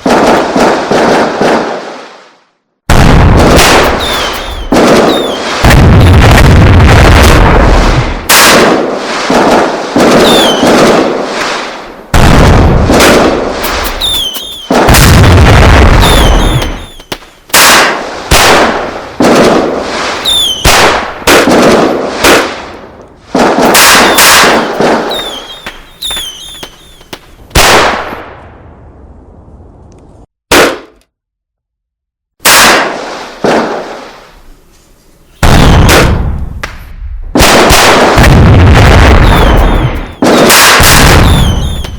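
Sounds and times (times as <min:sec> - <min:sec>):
loud explosive bangs: 0:02.9 - 0:28.4, 0:35.4 - 0:41.9
high squealing whistles: 0:04.0 - 0:05.5, 0:10.2 - 0:10.6, 0:13.7 - 0:14.8, 0:16.0 - 0:17.1, 0:20.2 - 0:20.7, 0:25.1 - 0:27.2, 0:39.2 - 0:40.3, 0:41.2 - 0:41.9.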